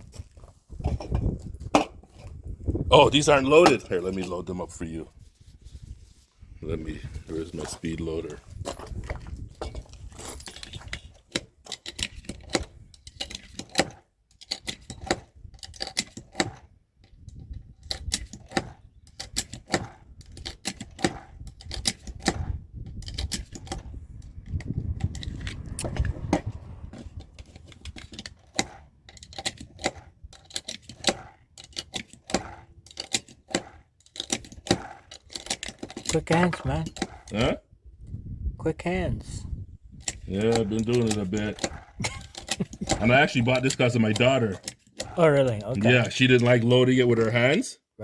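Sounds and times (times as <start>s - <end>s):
metallic clicks loading cartridges: 9.7s - 26.0s, 26.9s - 37.4s, 40.0s - 47.6s.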